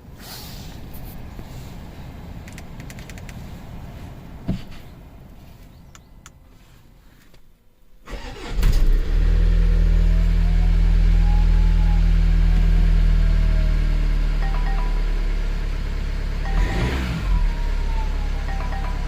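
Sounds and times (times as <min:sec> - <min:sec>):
diesel engine starting and idling: 0:08.0 - 0:19.0.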